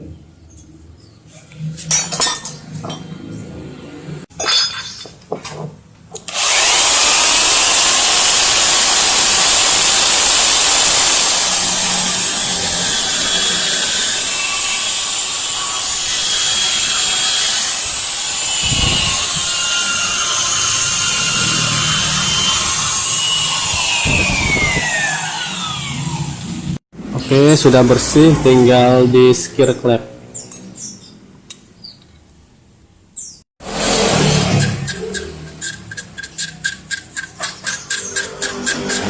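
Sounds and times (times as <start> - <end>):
power tool running: 6.3 - 26.8, 33.6 - 35.5.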